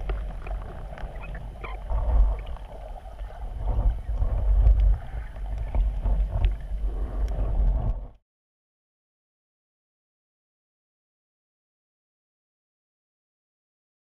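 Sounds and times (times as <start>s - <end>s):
small underwater clicks: 0.0s - 8.1s
muffled underwater surf rumble: 0.0s - 8.2s.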